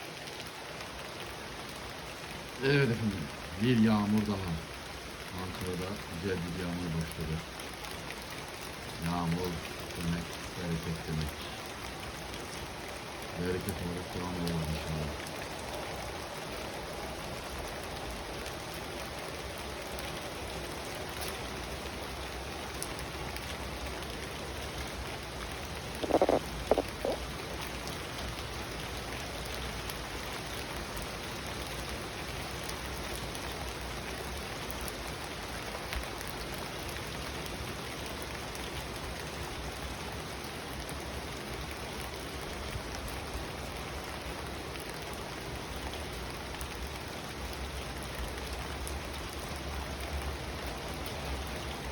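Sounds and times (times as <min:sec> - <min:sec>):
rain pattering: 0:00.0 - 0:51.9.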